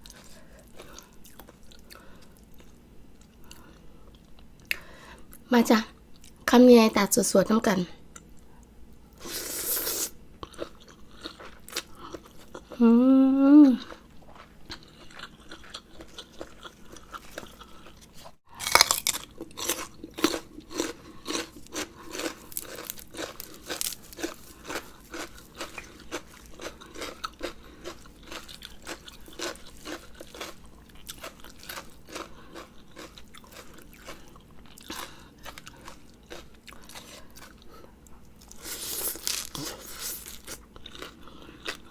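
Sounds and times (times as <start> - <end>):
crunchy chewing: 9.6 - 12.8, 13.8 - 41.9
person humming: 12.8 - 13.8.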